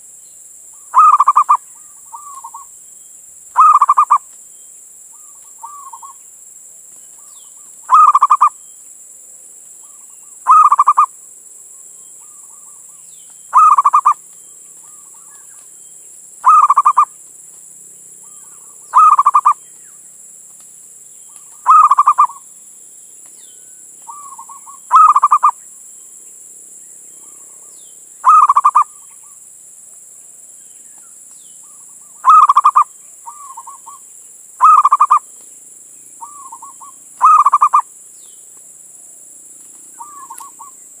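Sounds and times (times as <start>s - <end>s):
dove cooing: 0.9s - 2.7s, 3.6s - 4.2s, 7.9s - 8.5s, 9.8s - 11.1s, 13.6s - 14.2s, 16.4s - 17.1s, 18.2s - 19.6s, 21.6s - 22.4s, 24.1s - 25.6s, 28.2s - 29.4s, 31.7s - 34.0s, 34.6s - 35.2s, 36.2s - 37.9s, 40.0s - 40.8s.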